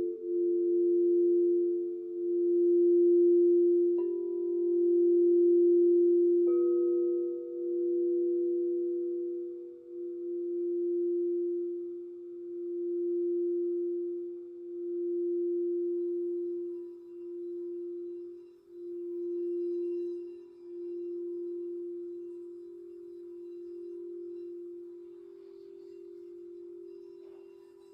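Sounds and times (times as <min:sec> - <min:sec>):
singing bowl low note: 0:00.0 - 0:27.9
higher singing bowl note: 0:14.7 - 0:27.9.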